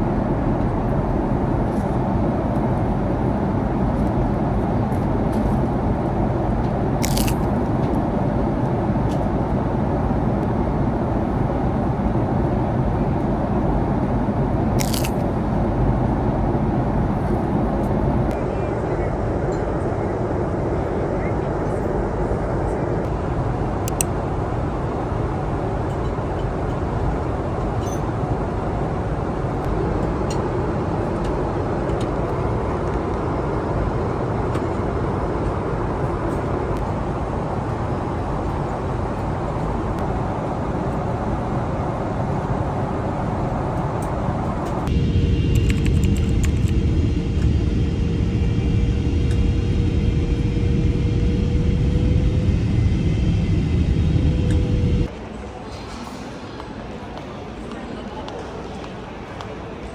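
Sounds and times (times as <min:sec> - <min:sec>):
hum rising in pitch: 0:44.0 - 0:55.1.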